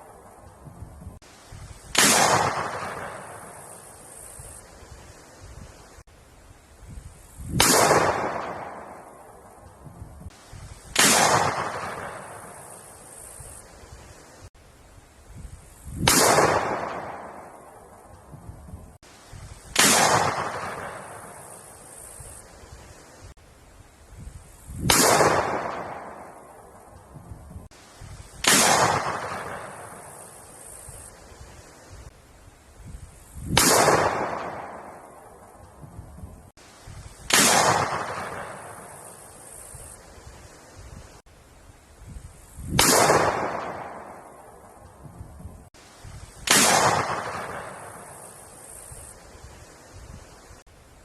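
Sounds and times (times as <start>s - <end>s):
gunshots with echo: 1.9s - 3.6s, 7.6s - 9.1s, 11.0s - 12.6s, 16.0s - 17.6s, 19.8s - 21.3s, 24.9s - 26.4s, 28.4s - 30.2s, 33.5s - 35.1s, 37.3s - 39.0s, 42.8s - 44.3s, 46.5s - 48.2s.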